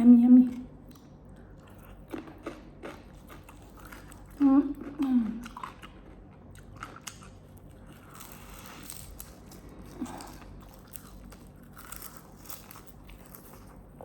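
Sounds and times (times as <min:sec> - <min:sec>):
person chewing: 0:00.8 - 0:14.0.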